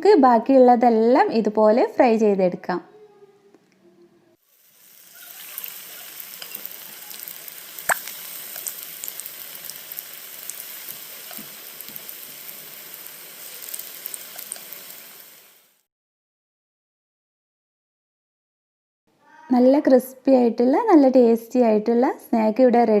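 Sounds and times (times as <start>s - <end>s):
batter deep-frying in oil: 4.4s - 15.8s.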